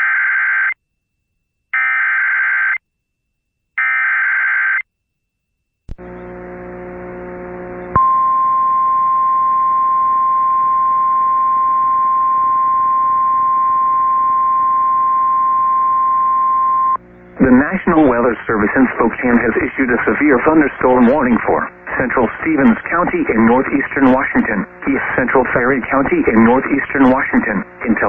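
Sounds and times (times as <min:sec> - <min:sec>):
low hiss with hum: 0:05.9 - 0:28.0.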